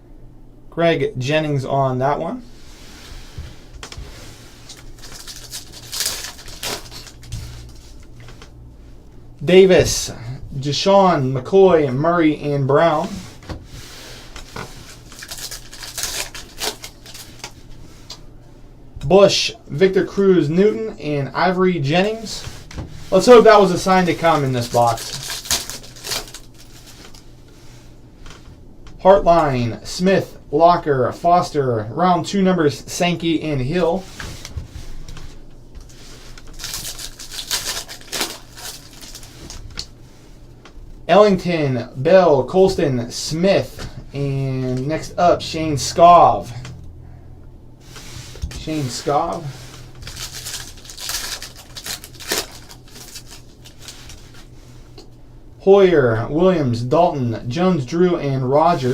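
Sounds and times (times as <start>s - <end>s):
trading cards rustling and sliding: 2.7s - 8.6s, 13.0s - 18.1s, 22.0s - 27.6s, 34.0s - 39.7s, 47.8s - 54.8s, 58.6s - 58.9s.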